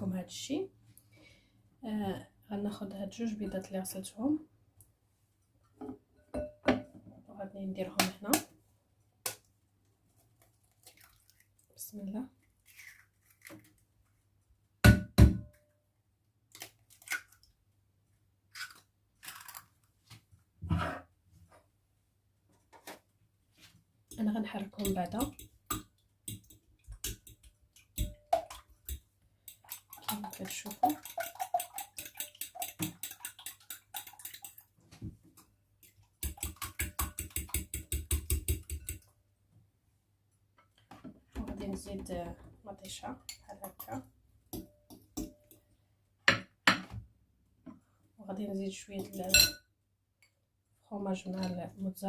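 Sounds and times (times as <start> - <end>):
utensil tapping bowl beating eggs: 24.1 - 34.6, 35.8 - 39.1.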